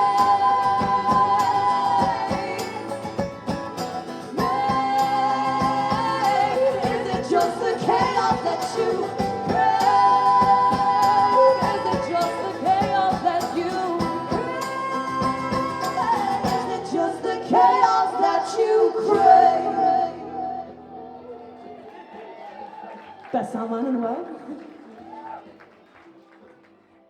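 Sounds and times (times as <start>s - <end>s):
strummed guitar: 0.0s - 17.8s
two voices singing in harmony: 0.0s - 21.4s.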